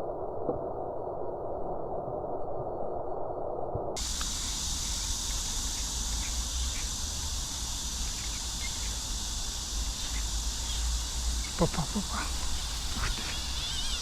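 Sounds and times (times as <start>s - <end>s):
faint ticks: 4.0s - 6.9s
dull muffled noise: 4.0s - 14.0s
insects chirping: 4.0s - 14.0s.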